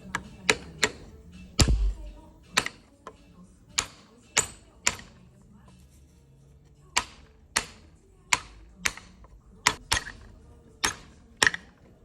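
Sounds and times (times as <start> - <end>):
sharp taps on metal: 6.9 - 11.7.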